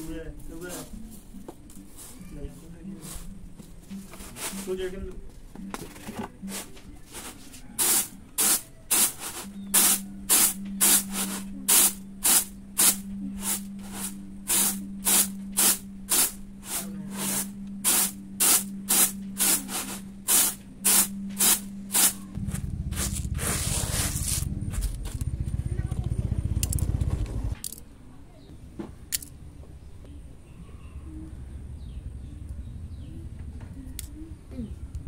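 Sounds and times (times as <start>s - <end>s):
rhythmic swishing strokes: 7.4s - 25.5s
steady low hum: 10.0s - 27.6s.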